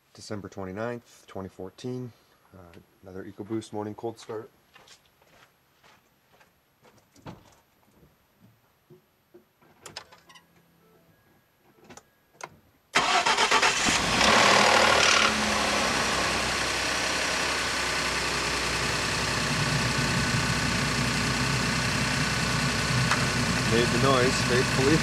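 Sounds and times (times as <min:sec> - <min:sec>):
truck engine starting and idling: 0:13.0 - 0:25.0.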